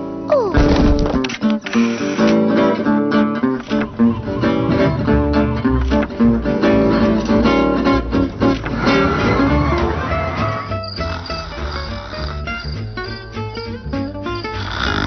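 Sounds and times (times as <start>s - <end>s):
plucked acoustic guitar: 0.3s - 15.0s
bass line: 3.4s - 15.0s.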